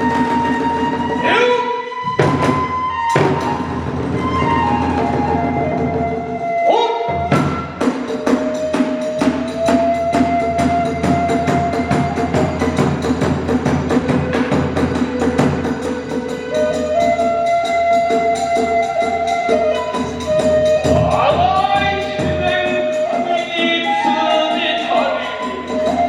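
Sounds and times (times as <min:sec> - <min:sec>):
bamboo flute long notes: 0:00.0 - 0:26.0
drums beating: 0:00.0 - 0:26.0
small hand cymbals: 0:07.7 - 0:26.0.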